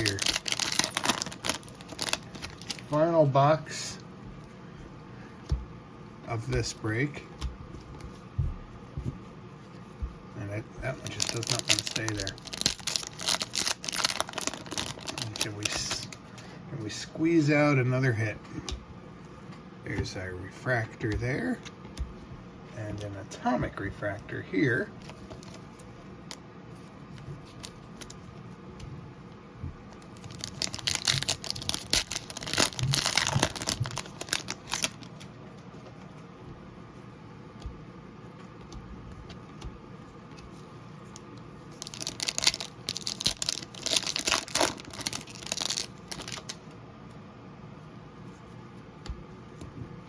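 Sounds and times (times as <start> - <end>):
foil wrappers crinkling and tearing: 0.0 - 3.9, 10.8 - 16.2, 24.7 - 25.8, 29.9 - 35.3, 41.7 - 46.7.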